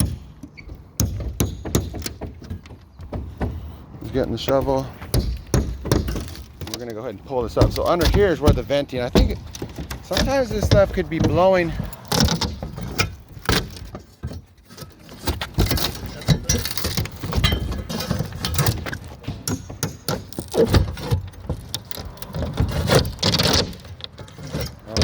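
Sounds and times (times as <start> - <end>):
metal scraping against wood: 0.0 - 25.0
wood knocking and clattering: 0.0 - 25.0
shovel prying plywood: 7.5 - 25.0.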